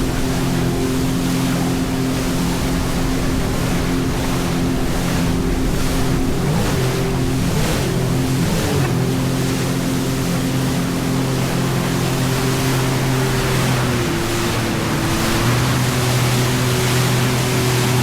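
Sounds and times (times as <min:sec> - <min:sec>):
jet ski engine running: 0:00.0 - 0:18.0
water rushing: 0:00.0 - 0:18.0.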